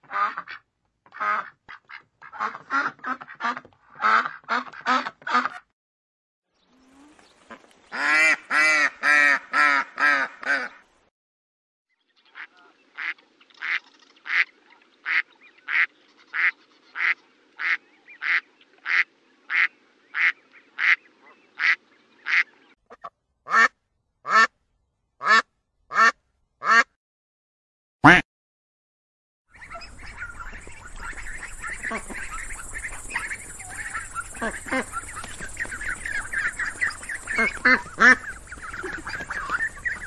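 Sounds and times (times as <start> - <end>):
ducks quacking: 0.0 - 5.6, 7.0 - 10.8, 12.3 - 23.7, 28.0 - 28.2, 29.6 - 40.0.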